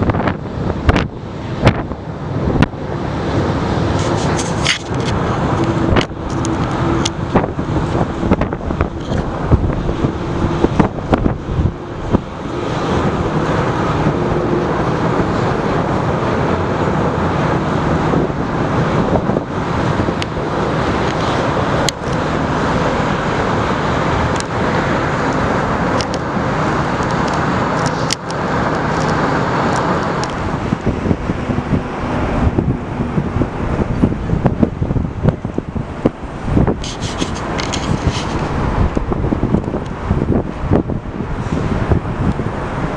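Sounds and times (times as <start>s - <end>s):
jet airliner engines roaring: 0.0s - 42.9s
wind buffeting microphone: 0.0s - 42.9s.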